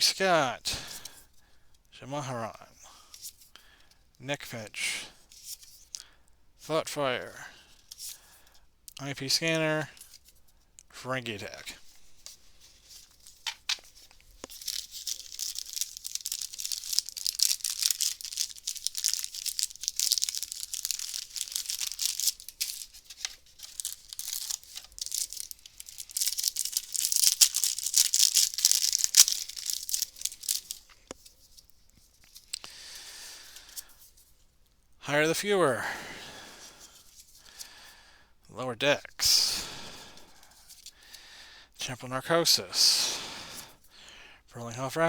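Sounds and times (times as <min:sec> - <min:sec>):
wrapper tearing and crinkling: 0:12.9 - 0:31.0.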